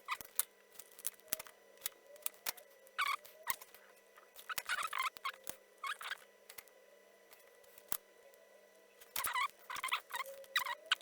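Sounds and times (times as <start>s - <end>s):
small clicks of components: 0.0s - 8.4s.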